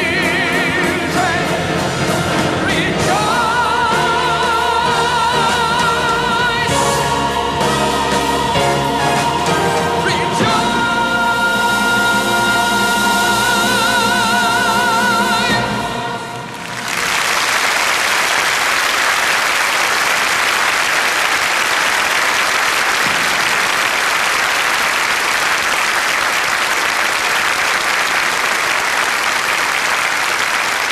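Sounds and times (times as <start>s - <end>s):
choir singing with accompaniment: 0.0s - 16.9s
audience applauding: 16.4s - 30.9s.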